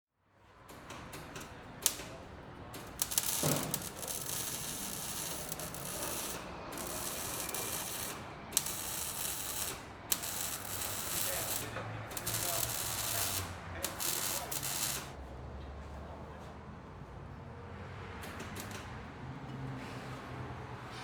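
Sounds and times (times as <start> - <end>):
ratcheting hand tools: 2.8 - 15.1.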